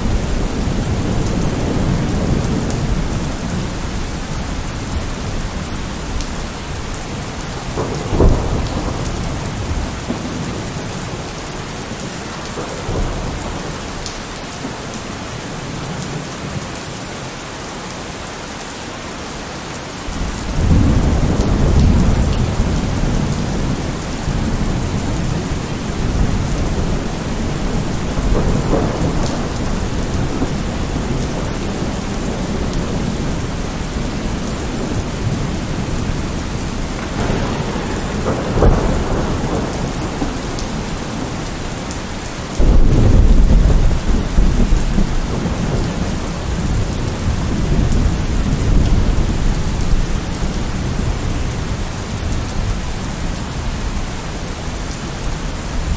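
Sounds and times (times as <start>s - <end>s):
deep thunder rumble: 0.0s - 11.3s, 20.2s - 52.7s
heavy rain: 0.0s - 55.9s
thunder crack: 20.2s - 36.1s, 36.7s - 41.6s, 42.6s - 49.4s.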